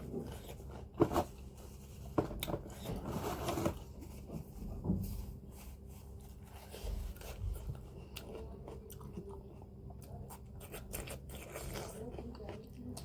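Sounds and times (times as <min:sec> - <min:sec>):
chewing and mouth smacking: 0:07.1 - 0:13.0.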